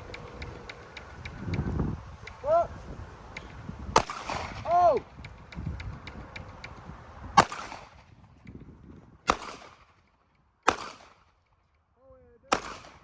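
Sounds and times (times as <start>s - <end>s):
handgun shots with echo: 4.0s - 4.6s, 7.4s - 8.0s, 9.3s - 10.0s, 10.7s - 11.2s, 12.5s - 13.0s.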